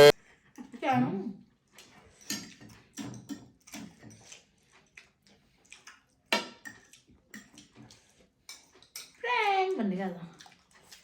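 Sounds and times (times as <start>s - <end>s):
utensils clinking against dishes: 1.8s - 5.0s, 6.3s - 9.3s.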